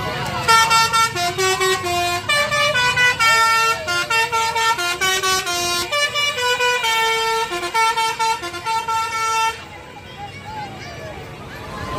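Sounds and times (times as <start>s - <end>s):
bus horn playing fast melody: 0.4s - 9.7s.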